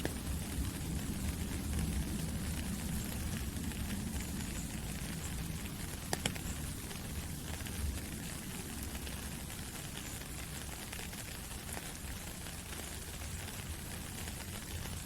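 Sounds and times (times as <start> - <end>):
rain falling through trees: 0.0 - 15.0.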